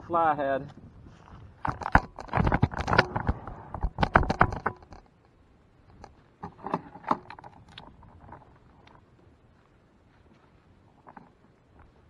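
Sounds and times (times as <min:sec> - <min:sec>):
knocks and rattles: 0:01.6 - 0:05.1.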